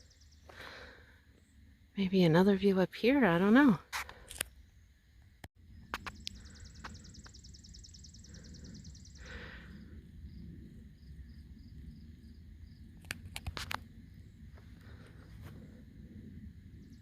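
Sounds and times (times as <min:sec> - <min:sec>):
low wind rumble: 0:04.6 - 0:17.0.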